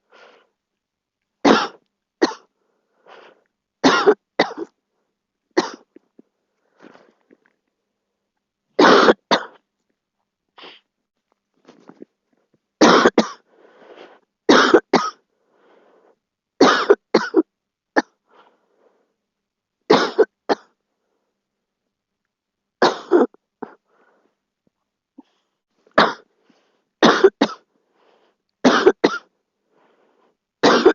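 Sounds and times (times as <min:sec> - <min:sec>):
soft breathing: 0:00.0 - 0:00.7, 0:02.5 - 0:03.7, 0:05.9 - 0:08.4, 0:13.4 - 0:14.4, 0:15.3 - 0:16.4, 0:18.2 - 0:19.4, 0:23.7 - 0:27.0, 0:27.6 - 0:28.6, 0:29.4 - 0:30.6
girl coughing: 0:03.8 - 0:04.7, 0:05.6 - 0:05.9, 0:08.8 - 0:09.6, 0:12.8 - 0:13.4, 0:14.5 - 0:15.2, 0:16.6 - 0:18.1, 0:19.9 - 0:20.7, 0:22.8 - 0:23.8, 0:26.0 - 0:26.3, 0:27.0 - 0:27.6, 0:28.6 - 0:29.3, 0:30.6 - 0:30.9.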